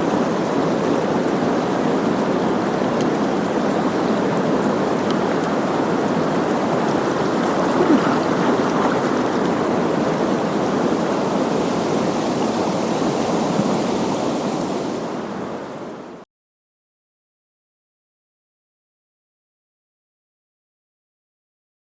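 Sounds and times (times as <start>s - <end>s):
river water rushing: 0.0s - 16.2s.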